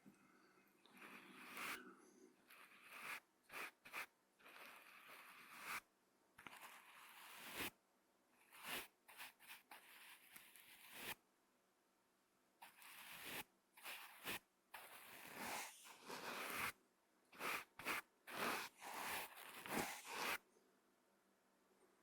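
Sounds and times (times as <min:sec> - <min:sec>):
brush sweeping across microphone: 0:14.3 - 0:16.8, 0:17.4 - 0:20.4.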